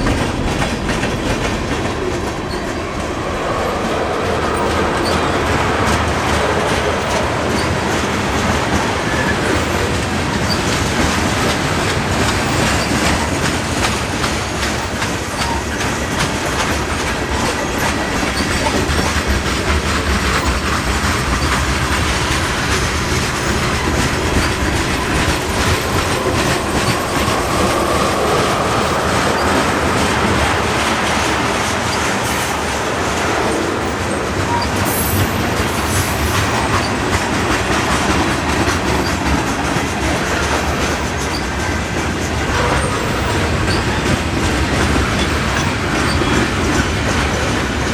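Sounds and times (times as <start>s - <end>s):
train rumbling past: 0.0s - 47.9s
wheels clicking over rail joints: 0.0s - 47.9s.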